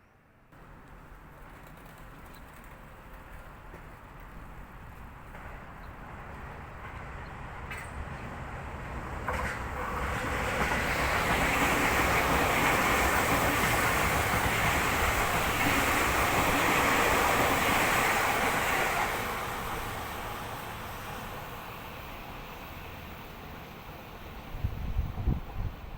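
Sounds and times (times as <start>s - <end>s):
electric train passing: 0.3s - 25.9s.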